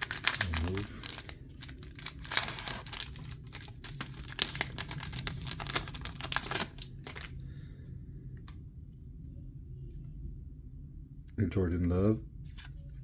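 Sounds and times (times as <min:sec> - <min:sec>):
plastic packaging torn and crinkled: 0:00.0 - 0:07.4.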